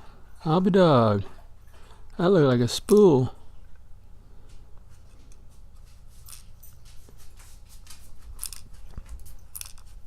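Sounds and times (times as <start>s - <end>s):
small metal lock parts clicking: 8.4s - 9.9s.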